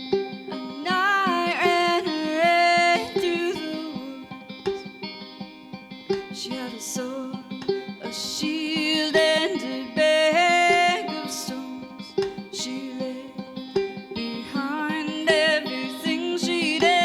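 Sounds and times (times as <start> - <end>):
plucked string instrument: 0.0 - 17.0.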